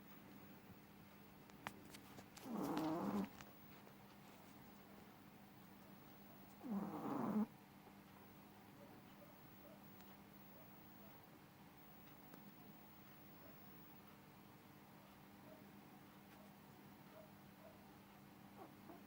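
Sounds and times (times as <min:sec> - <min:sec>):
cat snoring: 0:02.4 - 0:03.3, 0:06.6 - 0:07.5.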